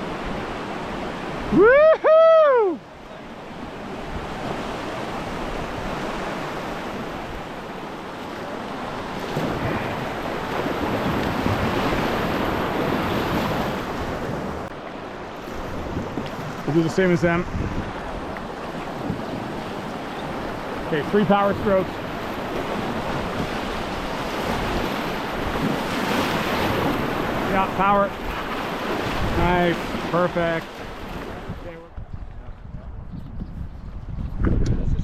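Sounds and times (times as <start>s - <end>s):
loud two-part whoop: 1.5s - 2.8s
wind on microphone: 3.5s - 14.7s, 15.3s - 35.0s.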